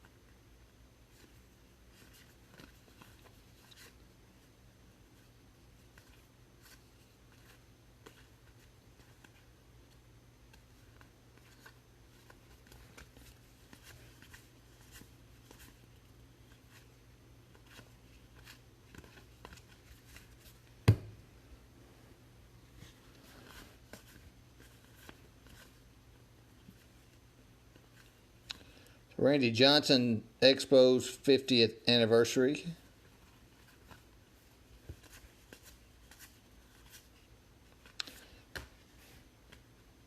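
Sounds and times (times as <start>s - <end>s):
cards clicking and rustling: 5.8s - 20.6s.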